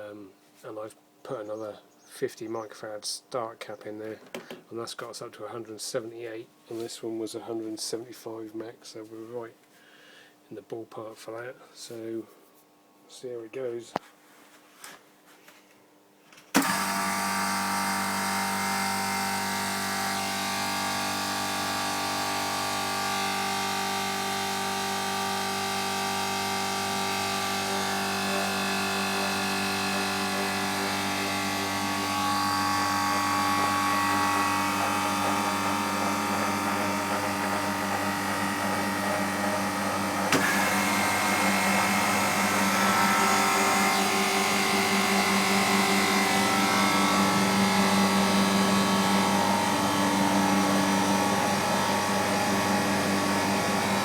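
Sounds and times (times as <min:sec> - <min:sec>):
refrigeration compressor humming: 0:16.5 - 0:54.0.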